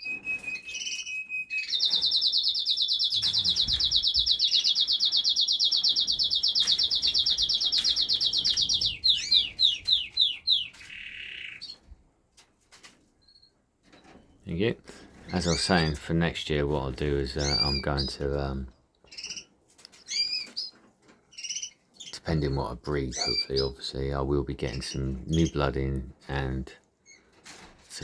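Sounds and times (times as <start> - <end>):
canary singing trills: 0.0 - 11.9, 15.3 - 15.9, 17.2 - 18.3, 19.1 - 23.8.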